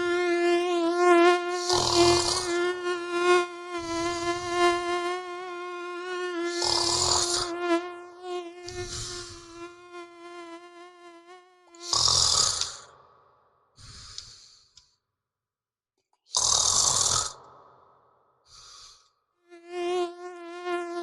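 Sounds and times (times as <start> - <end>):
mosquito whining: 0.0 - 12.8
person snoring: 1.5 - 2.6, 3.8 - 4.8, 6.5 - 7.6, 8.6 - 9.8, 11.8 - 12.9, 13.8 - 14.7, 16.3 - 17.5, 18.5 - 19.1.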